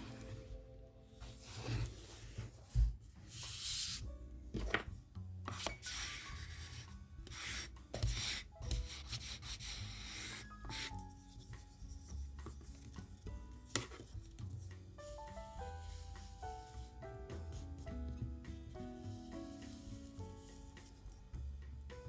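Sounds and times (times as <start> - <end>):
paper being rubbed: 5.6 - 12.6.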